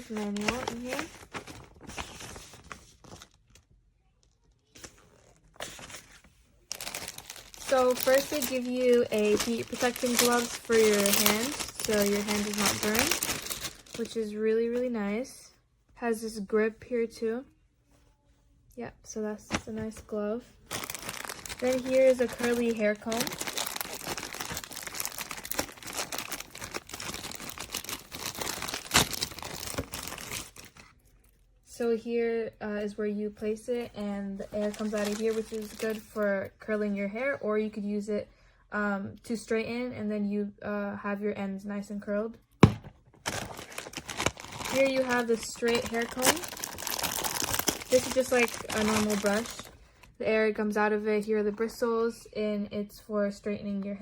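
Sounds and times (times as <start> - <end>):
packaging rustling and crinkling: 0.0 - 14.3, 19.5 - 31.4, 34.4 - 36.3, 42.6 - 50.1.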